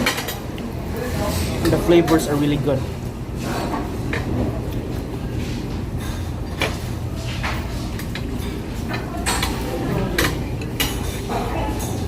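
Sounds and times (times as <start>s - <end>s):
low background hum: 0.0s - 12.0s
cutlery and dishes clinking: 6.0s - 12.0s.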